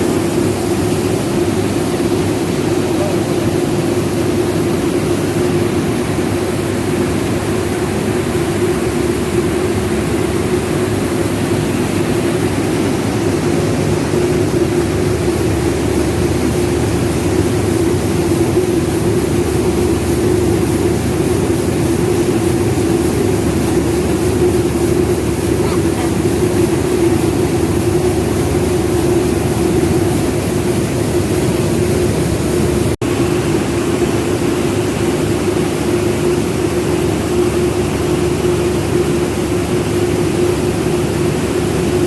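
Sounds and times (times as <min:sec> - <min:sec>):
constant machine hum: 0:00.0 - 0:42.0
milling machine din: 0:09.1 - 0:34.2.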